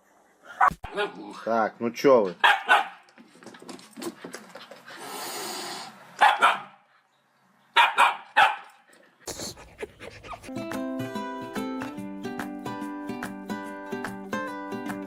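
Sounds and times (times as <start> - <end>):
dog barking: 0.6 - 1.2, 2.4 - 3.0, 6.2 - 6.8, 7.7 - 8.8.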